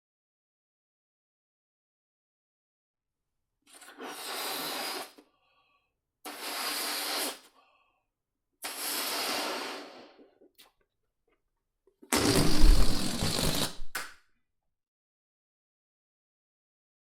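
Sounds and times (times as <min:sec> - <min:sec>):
puffs of air into balloon: 0:03.7 - 0:05.3, 0:06.3 - 0:07.7, 0:08.6 - 0:10.3.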